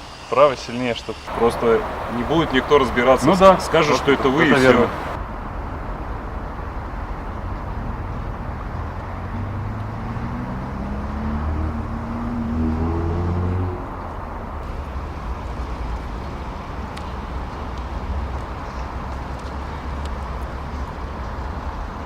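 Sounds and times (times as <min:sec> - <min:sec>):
vehicle engine passing: 0:01.3 - 0:05.2, 0:09.2 - 0:15.4
traffic rumble: 0:01.3 - 0:22.0.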